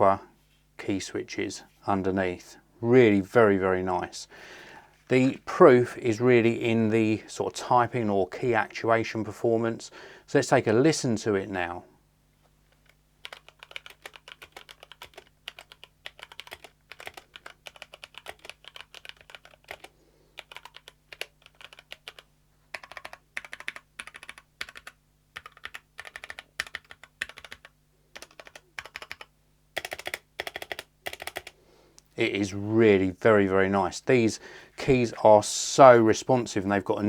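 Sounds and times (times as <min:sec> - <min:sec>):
mechanical keyboard typing: 0:12.8 - 0:31.6.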